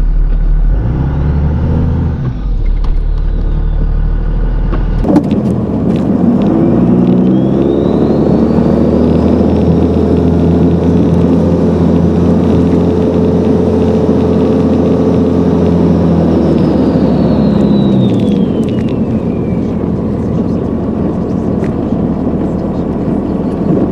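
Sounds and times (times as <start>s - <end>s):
diesel engine accelerating: 0.0s - 23.9s
turbo whistle: 6.6s - 9.5s, 15.7s - 20.3s.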